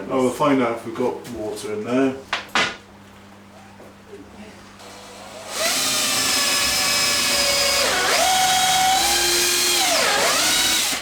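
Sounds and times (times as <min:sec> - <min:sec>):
power drill motor whine: 0:04.8 - 0:11.0.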